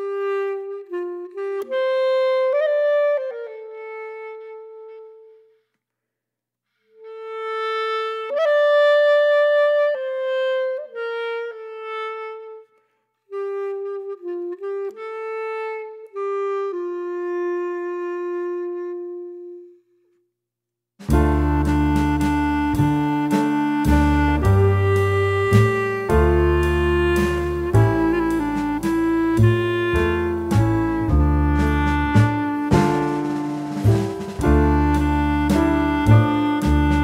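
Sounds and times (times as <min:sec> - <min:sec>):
saxophone slow melody: 0:00.0 - 0:05.7, 0:06.8 - 0:20.2, 0:21.1 - 0:37.0.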